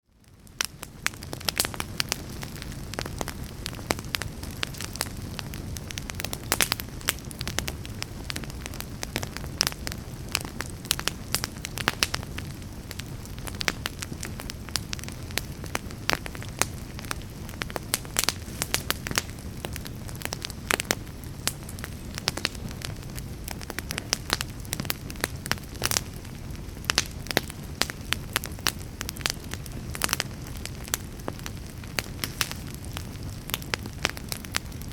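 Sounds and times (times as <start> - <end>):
wood fire crackling and popping: 0.0 - 34.9.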